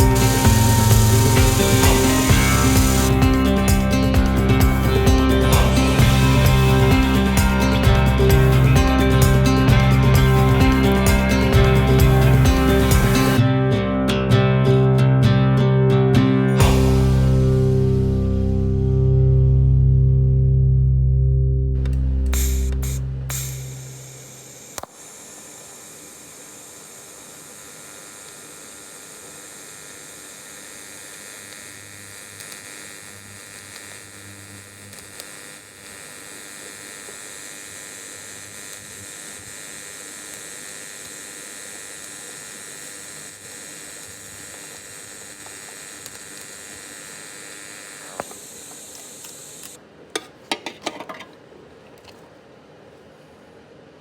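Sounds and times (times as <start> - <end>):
welding arc hissing: 0.0 - 13.4, 22.3 - 49.8.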